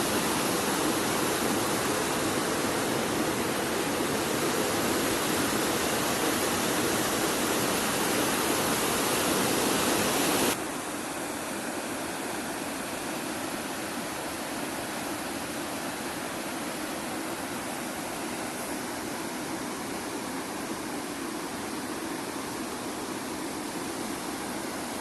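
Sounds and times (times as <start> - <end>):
waterfall rushing: 0.0 - 10.6.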